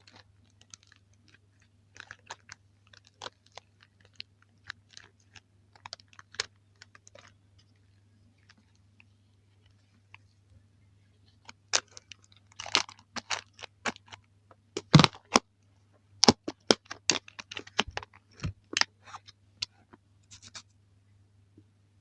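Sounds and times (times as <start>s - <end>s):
faint low hum: 0.0s - 22.0s.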